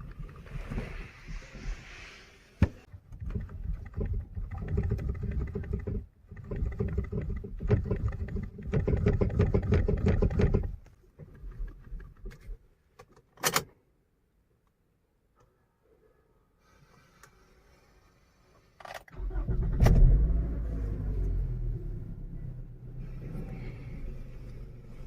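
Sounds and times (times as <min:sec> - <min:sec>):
steering column rubbing and knocking: 0:02.6 - 0:12.5, 0:23.0 - 0:25.0.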